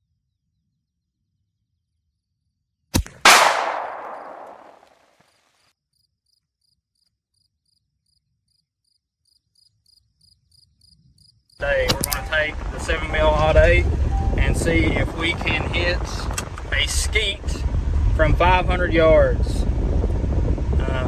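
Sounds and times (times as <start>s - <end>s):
rifle shot echoing: 3.0s - 4.8s
cricket chirping: 5.9s - 12.1s.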